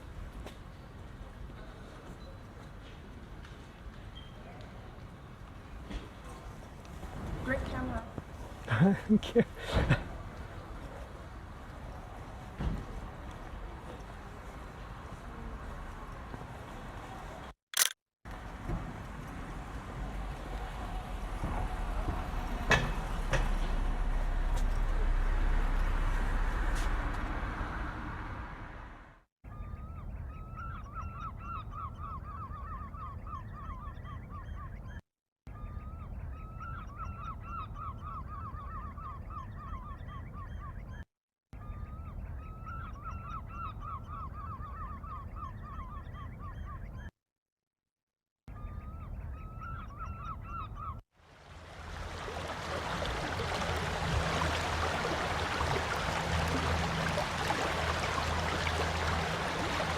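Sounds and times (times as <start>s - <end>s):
sharp click: 17.7s - 18.0s
rushing noise: 20.2s - 29.1s
geese honking: 52.0s - 59.9s.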